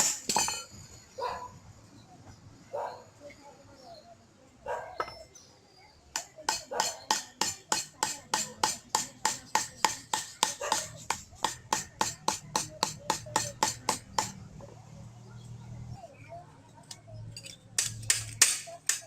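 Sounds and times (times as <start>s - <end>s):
hammer striking sheet metal: 0.0s - 0.6s, 6.2s - 14.4s, 17.8s - 19.0s.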